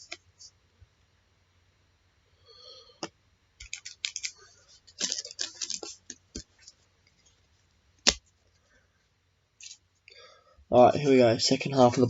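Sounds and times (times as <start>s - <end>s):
cards clicking and rustling: 3.0s - 6.8s, 8.0s - 8.3s.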